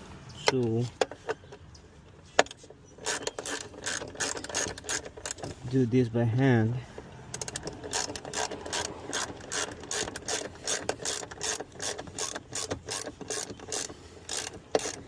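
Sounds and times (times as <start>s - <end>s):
ratchet wrench clicking: 2.4s - 5.5s, 7.3s - 15.0s.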